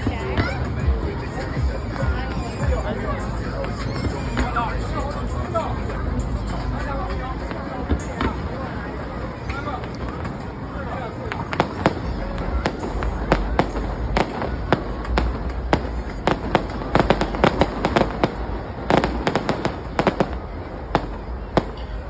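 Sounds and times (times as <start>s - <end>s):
fireworks bangs and crackles: 9.6s - 22.0s.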